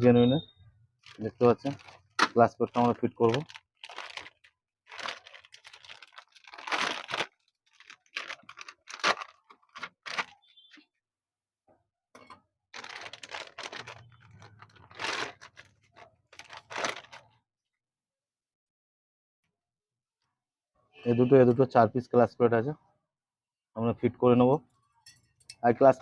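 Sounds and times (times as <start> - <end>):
packaging rustling: 1.0 - 10.6, 12.8 - 17.3.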